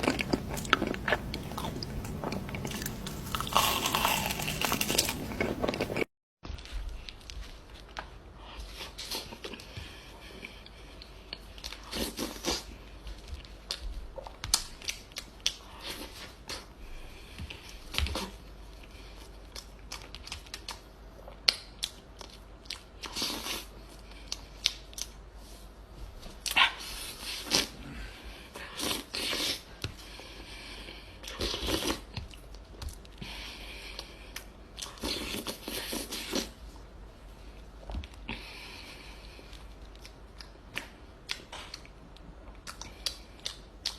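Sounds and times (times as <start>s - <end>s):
chewing and wet mouth noises: 0.0s - 6.1s, 17.4s - 25.3s, 37.4s - 43.9s.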